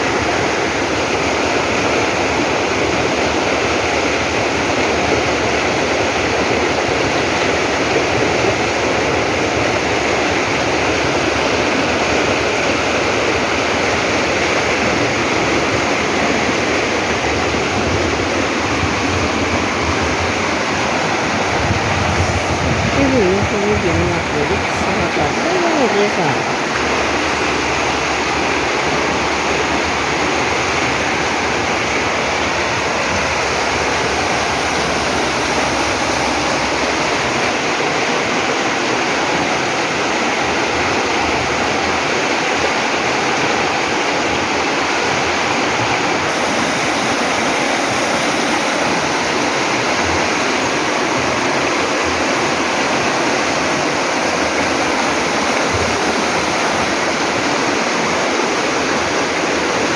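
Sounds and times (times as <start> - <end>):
river water rushing: 0.0 - 59.9.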